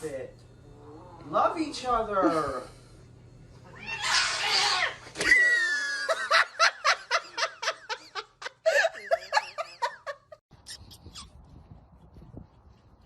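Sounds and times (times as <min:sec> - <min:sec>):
shrill shriek: 0:03.7 - 0:05.9
person laughing hard: 0:05.3 - 0:10.4.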